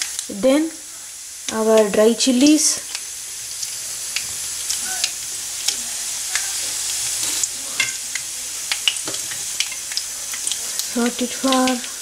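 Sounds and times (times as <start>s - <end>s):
seeds sizzling in hot oil: 0.0s - 12.0s
seeds popping: 8.7s - 12.0s.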